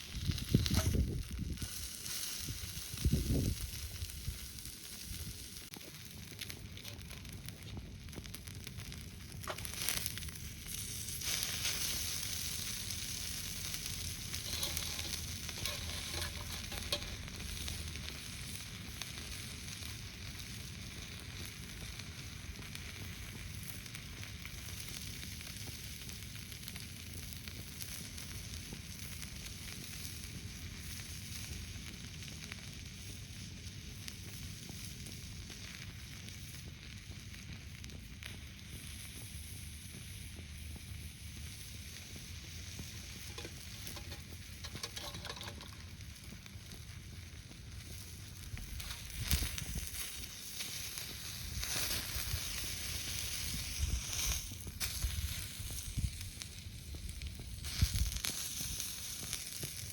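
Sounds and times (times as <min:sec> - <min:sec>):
steak sizzling on a griddle: 0:00.0 - 0:59.9.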